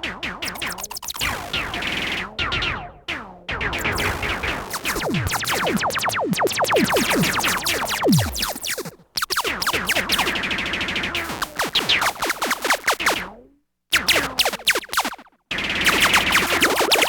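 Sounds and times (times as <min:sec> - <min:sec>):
laser blaster zaps: 0:04.0 - 0:09.5.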